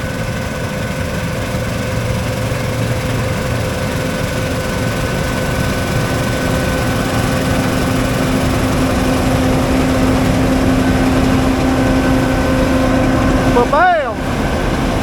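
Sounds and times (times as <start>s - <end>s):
farm machine engine droning: 0.0s - 15.0s.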